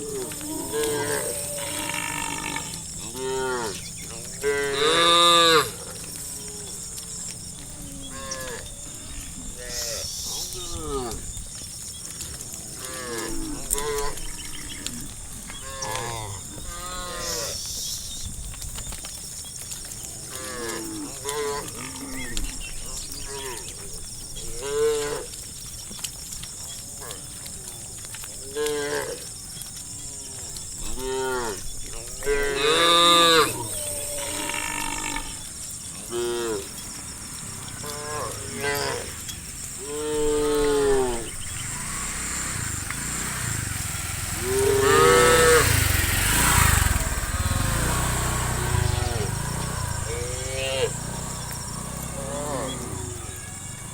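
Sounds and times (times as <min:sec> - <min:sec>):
cattle mooing: 0:00.0 - 0:11.3, 0:12.8 - 0:17.6, 0:30.9 - 0:53.9
steady high hiss: 0:36.8 - 0:53.9.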